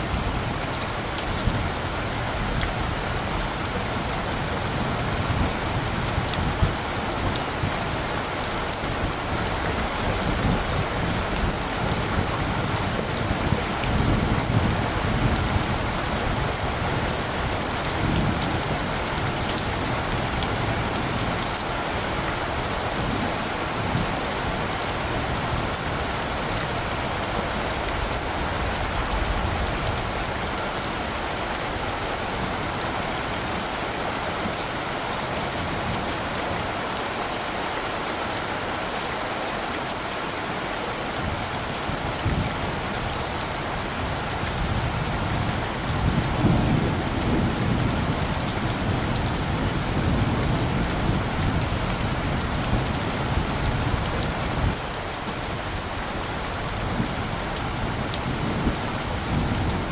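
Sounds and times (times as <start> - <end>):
rain pattering: 0.0 - 59.9
thunder rumbling: 41.2 - 54.9, 55.5 - 59.9.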